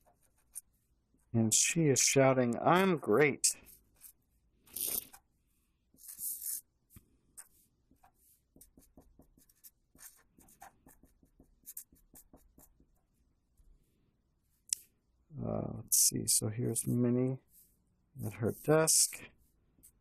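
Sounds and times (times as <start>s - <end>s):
pen scratching on paper: 0.0s - 0.9s, 5.9s - 6.6s, 7.4s - 13.2s.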